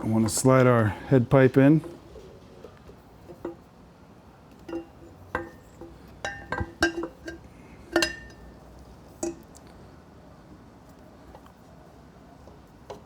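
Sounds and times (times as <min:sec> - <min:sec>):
metal pipe clinking: 0:03.3 - 0:03.7, 0:04.5 - 0:08.6, 0:09.2 - 0:09.5.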